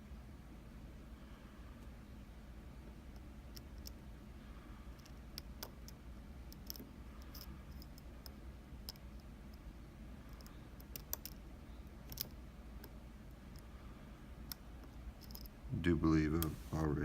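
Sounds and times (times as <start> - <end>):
low steady hum: 0.0 - 17.0
lock pick metallic clicks: 5.0 - 9.6, 10.3 - 11.4, 12.0 - 13.7, 14.4 - 15.5.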